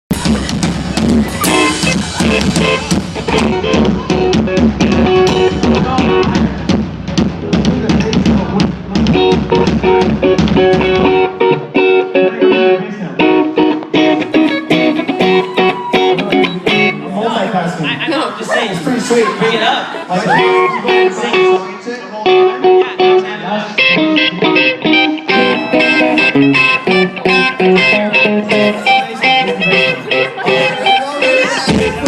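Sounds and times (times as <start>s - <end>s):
drum kit with cymbals and snare: 0.1s - 11.7s, 29.9s - 32.0s
heavy low bass: 0.1s - 12.4s
electric guitar: 0.1s - 17.2s, 20.0s - 32.0s.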